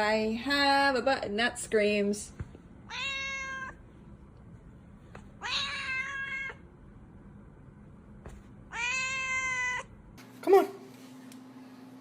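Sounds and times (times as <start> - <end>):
cat-like yowl: 5.4 - 6.6, 8.7 - 9.9.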